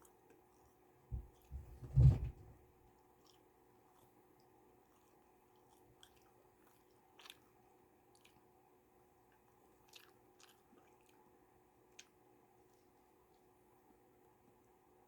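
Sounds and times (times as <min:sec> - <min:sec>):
faint steady hum: 0:00.0 - 0:15.0
person chewing food: 0:03.2 - 0:08.6, 0:09.2 - 0:13.4.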